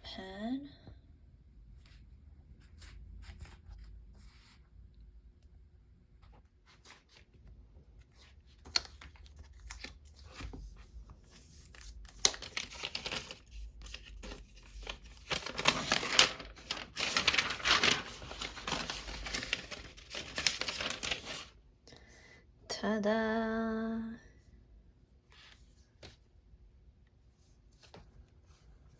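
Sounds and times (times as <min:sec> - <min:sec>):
plastic wrapping crinkling: 0:11.6 - 0:21.6
wrapping tearing: 0:11.7 - 0:21.5.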